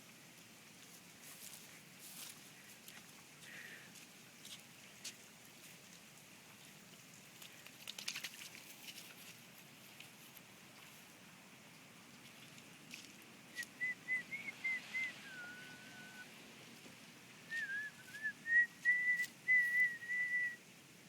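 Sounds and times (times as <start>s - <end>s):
person whistling a tune: 13.6s - 16.2s, 17.5s - 20.6s.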